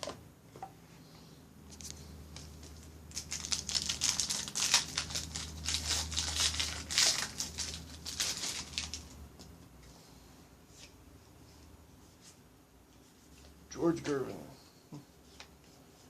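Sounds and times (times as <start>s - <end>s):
plastic wrapper crackling: 2.4s - 9.2s.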